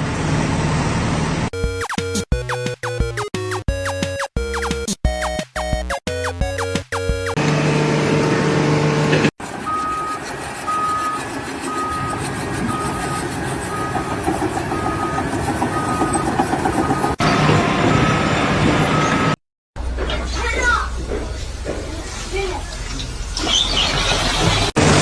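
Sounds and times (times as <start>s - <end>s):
engine and machinery noise: 0.0s - 1.5s, 7.3s - 23.5s, 24.1s - 25.0s
reversing alarm beeping: 3.7s - 19.4s.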